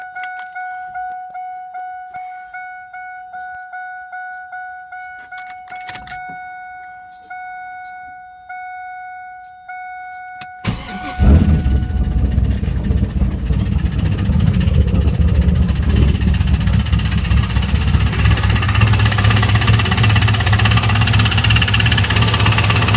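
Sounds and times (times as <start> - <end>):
car warning chime dinging: 0.0 - 22.9
car engine cranking and running: 10.6 - 22.9.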